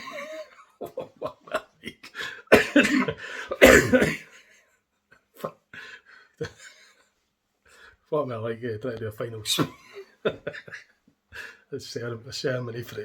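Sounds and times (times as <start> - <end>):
man laughing: 0.0 - 4.3, 9.5 - 10.9.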